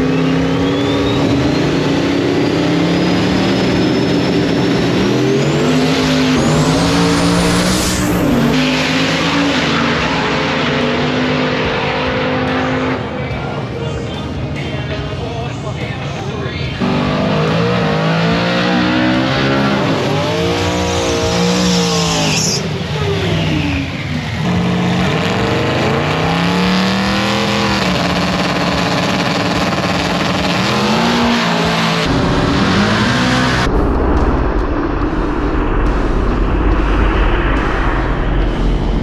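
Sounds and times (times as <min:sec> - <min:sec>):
car engine at full throttle: 0:00.0 - 0:39.0
low steady rumble: 0:32.1 - 0:39.0.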